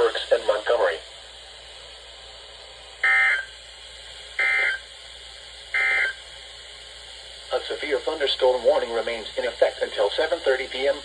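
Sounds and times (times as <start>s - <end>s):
faint radio hiss: 0.0s - 11.0s
warbling data tone bursts: 5.8s - 6.2s.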